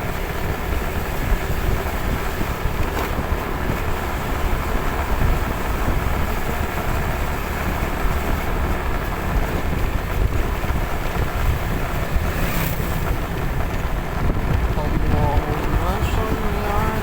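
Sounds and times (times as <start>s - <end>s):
vehicle engine and road noise: 0.0s - 17.0s
wind buffeting microphone: 0.0s - 17.0s.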